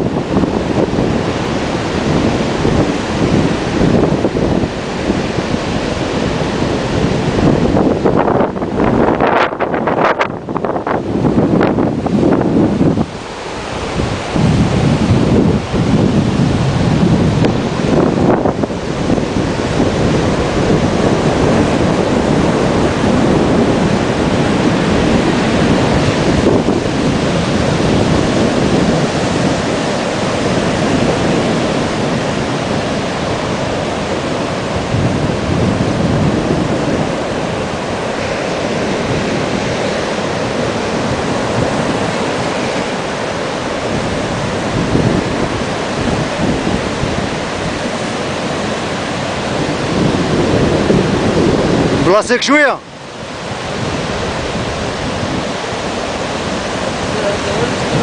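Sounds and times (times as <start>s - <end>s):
sea waves and surf rushing: 0.0s - 58.0s
wind buffeting microphone: 0.0s - 58.0s.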